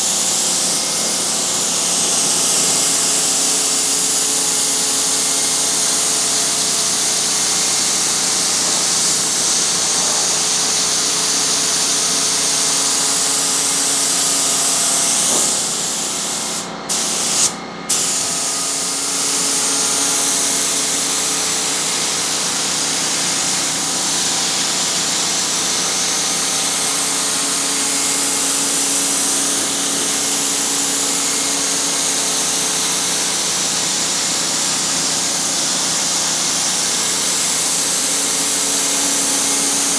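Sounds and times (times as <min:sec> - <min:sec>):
spray gun hissing: 0:00.1 - 0:35.3.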